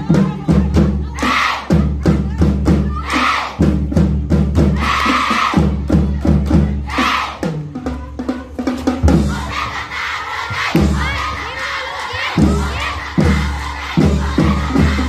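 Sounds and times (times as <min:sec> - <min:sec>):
drums beating a steady rhythm: 0:00.0 - 0:15.0
group of voices shouting a cheer: 0:01.1 - 0:01.8, 0:02.9 - 0:03.6, 0:04.8 - 0:05.7, 0:06.8 - 0:07.4, 0:09.3 - 0:15.0.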